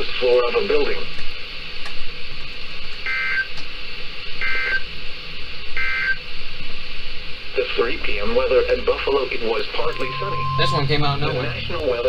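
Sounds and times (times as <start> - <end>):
radio hiss: 0.0 - 2.7, 4.2 - 12.0
electronic data bursts: 8.7 - 12.0.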